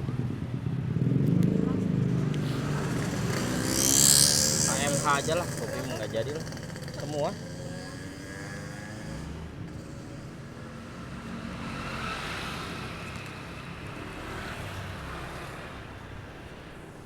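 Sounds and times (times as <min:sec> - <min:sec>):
road noise: 0:00.0 - 0:17.0
vehicle engine hum: 0:00.0 - 0:17.0.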